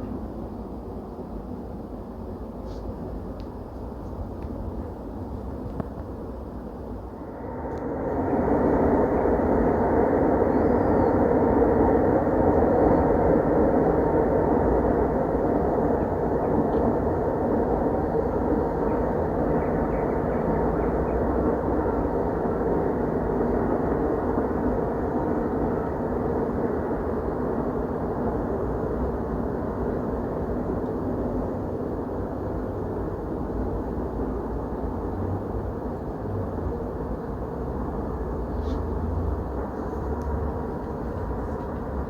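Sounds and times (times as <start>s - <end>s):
distant rumbling drone: 7.0s - 12.5s.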